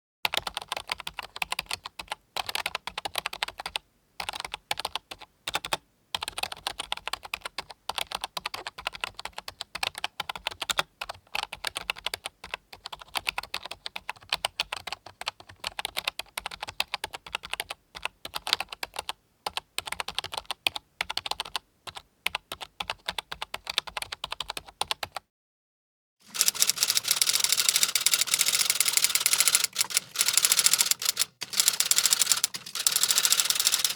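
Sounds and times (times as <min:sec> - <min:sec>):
typing on a computer keyboard: 0:00.3 - 0:25.3, 0:26.2 - 0:33.9.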